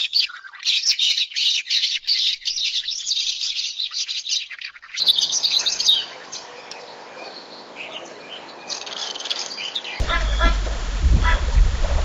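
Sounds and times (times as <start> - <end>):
bird chirping: 0.0 - 12.0
background hiss: 5.3 - 12.0.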